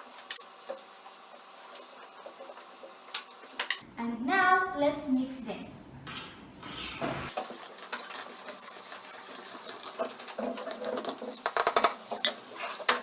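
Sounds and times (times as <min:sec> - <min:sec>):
spoon stirring in a container: 0:07.3 - 0:13.0.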